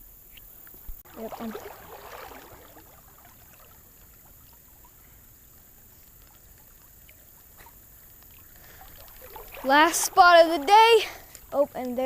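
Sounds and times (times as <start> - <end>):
river water running: 1.0 - 12.0
small ticks: 4.4 - 9.6.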